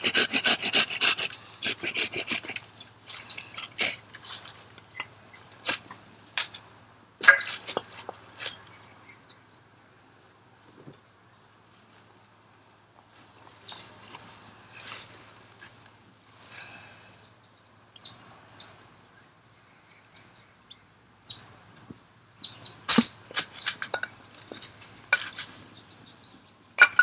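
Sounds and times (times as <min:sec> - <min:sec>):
insect chirring: 0:00.1 - 0:09.7, 0:19.6 - 0:26.2.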